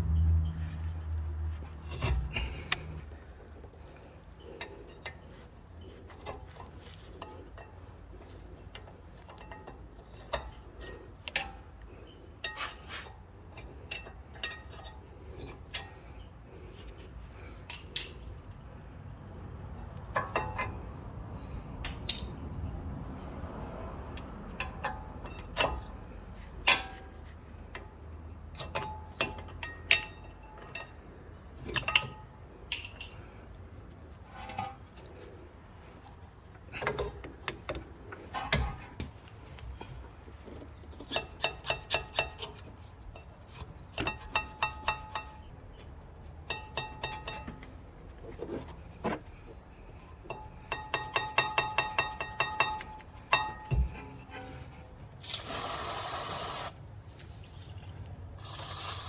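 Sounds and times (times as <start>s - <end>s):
metallic clinks of tools: 58.4s - 59.0s.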